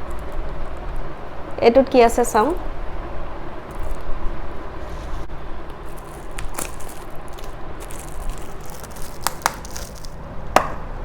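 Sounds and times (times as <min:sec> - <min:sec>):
packaging rustling and crinkling: 0:04.8 - 0:10.2.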